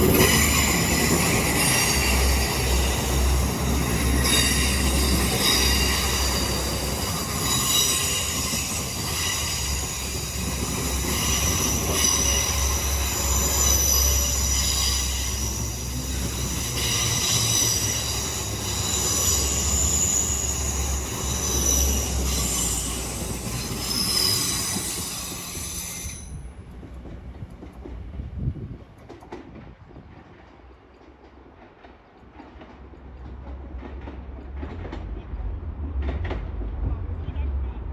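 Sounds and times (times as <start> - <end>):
train wheels squealing on rails: 0.0 - 27.2
train low rumble: 0.0 - 37.9.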